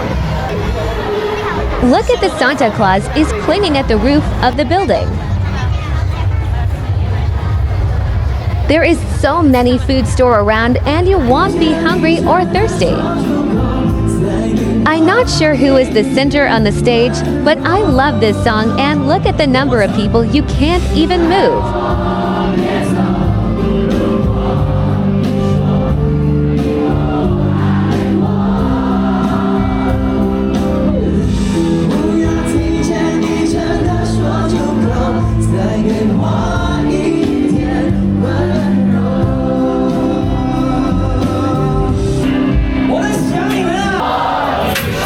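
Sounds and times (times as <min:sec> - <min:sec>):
live singing with band: 0:11.2 - 0:15.3, 0:16.8 - 0:18.8, 0:21.1 - 0:45.0.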